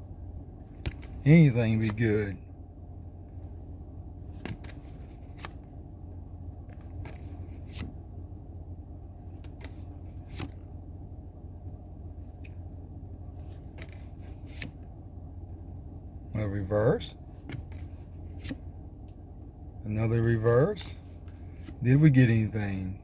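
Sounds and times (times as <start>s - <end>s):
steady low hum: 0.0s - 23.0s
trading cards rustling: 0.7s - 2.2s, 4.3s - 5.6s, 6.8s - 7.9s, 9.4s - 10.6s, 13.4s - 14.8s, 17.4s - 18.7s.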